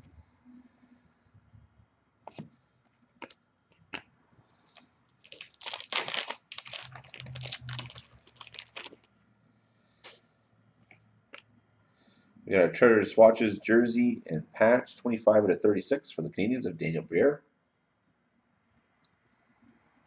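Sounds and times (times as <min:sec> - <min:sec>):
foil wrapper crinkling and tearing: 0:04.7 - 0:09.1.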